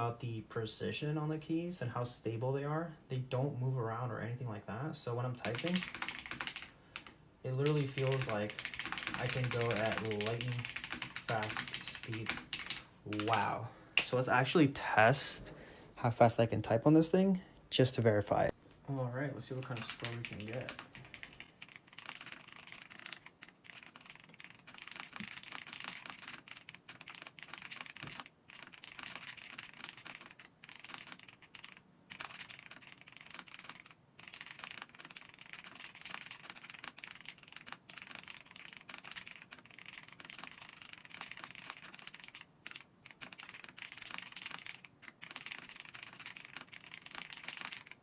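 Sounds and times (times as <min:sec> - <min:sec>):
mechanical keyboard typing: 0:05.4 - 0:13.5, 0:19.6 - 0:48.0.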